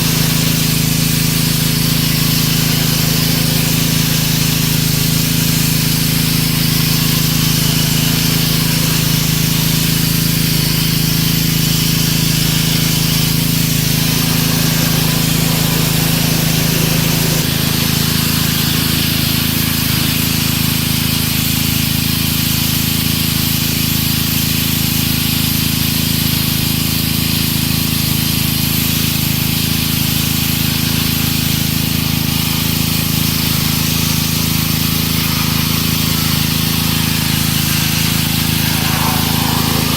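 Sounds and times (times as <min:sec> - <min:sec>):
water spray hiss: 0:00.0 - 0:22.8, 0:28.7 - 0:39.9
pressure washer motor hum: 0:00.0 - 0:39.9.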